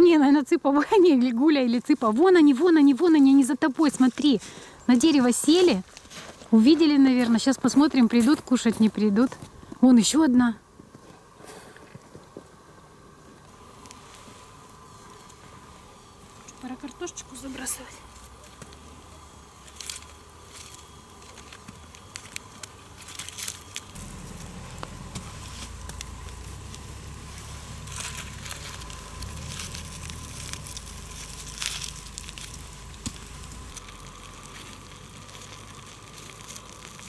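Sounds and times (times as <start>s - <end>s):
campfire crackling and popping: 10.8s - 37.0s
aluminium foil crinkling: 16.3s - 37.0s
low rumble: 23.9s - 37.0s.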